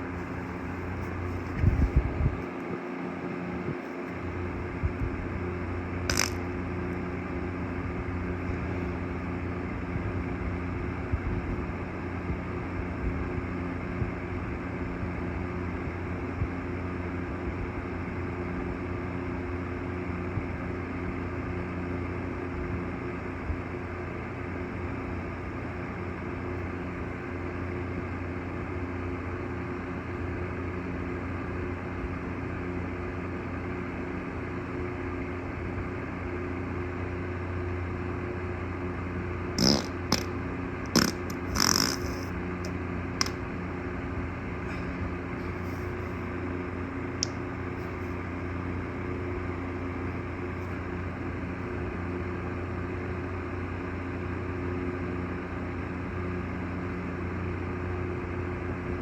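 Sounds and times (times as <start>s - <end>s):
steady low hum: 0.0s - 59.0s
short farts: 6.1s - 6.5s, 39.6s - 42.3s.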